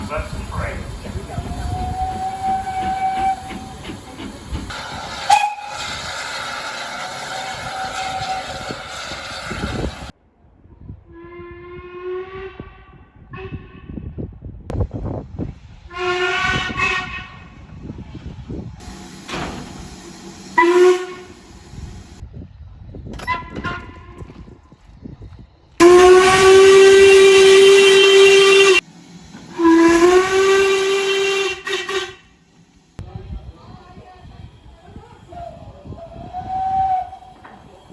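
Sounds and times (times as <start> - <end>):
steam locomotive whistle: 0.0 - 3.9, 4.8 - 10.1, 11.2 - 13.8, 15.9 - 17.5, 20.5 - 21.5, 25.8 - 28.8, 29.5 - 32.4, 35.5 - 37.7
steam hissing: 0.0 - 10.1, 15.6 - 22.2, 25.8 - 37.9.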